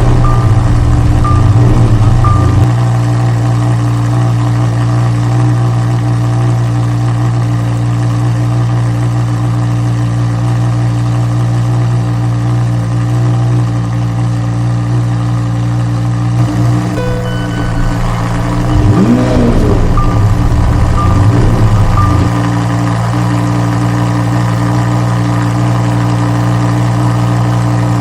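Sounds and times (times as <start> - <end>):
sports car engine idling: 0.0 - 2.7, 16.5 - 22.6.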